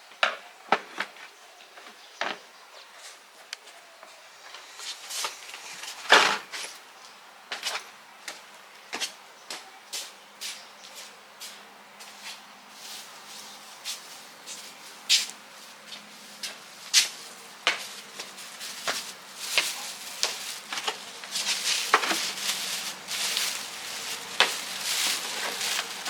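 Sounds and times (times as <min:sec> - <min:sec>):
scraping or brushing: 0:03.0 - 0:06.8, 0:10.0 - 0:26.0.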